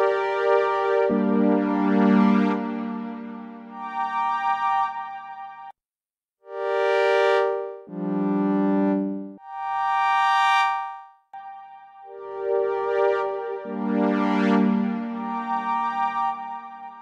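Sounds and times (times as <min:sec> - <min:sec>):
synthesizer pad notes: 0:00.0 - 0:05.7, 0:11.4 - 0:17.0.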